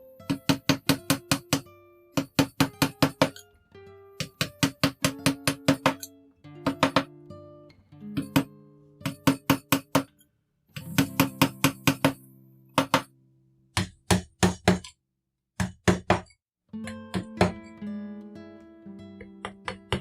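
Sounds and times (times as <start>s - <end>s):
acoustic guitar strumming: 5.1s - 9.5s, 10.8s - 12.8s, 16.7s - 19.7s.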